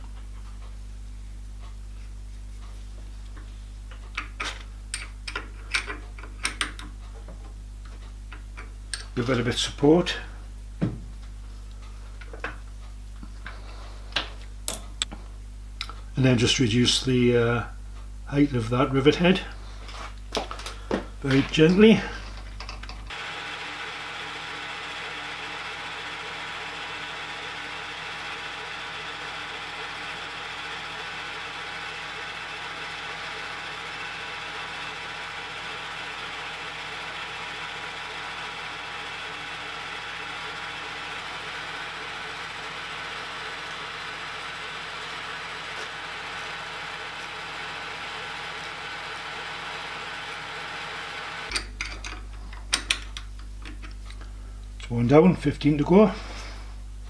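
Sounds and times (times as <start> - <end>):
lathe gear whine: 23.1 - 51.8.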